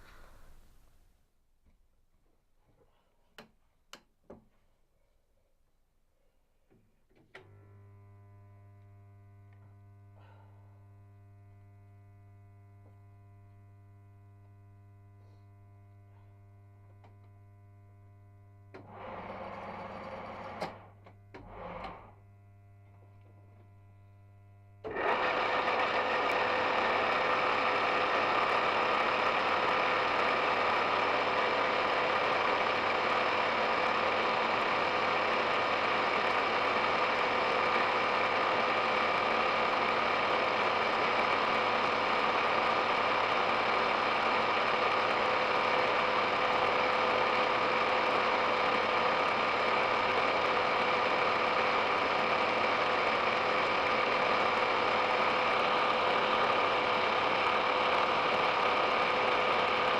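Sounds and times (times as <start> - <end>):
lathe spindle and gears running: 18.8 - 20.8, 24.9 - 59.9
electric motor humming: 24.8 - 59.9.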